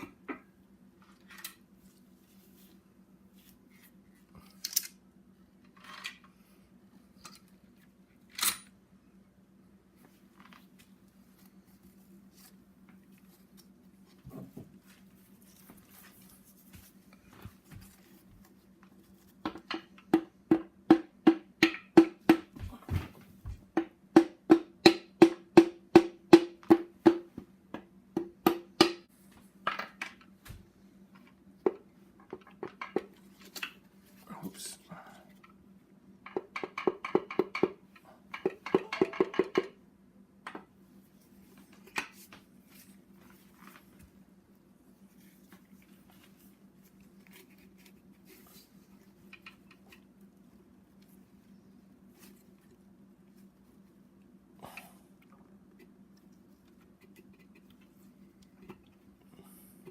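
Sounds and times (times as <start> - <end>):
low steady hum: 0.0 - 59.9.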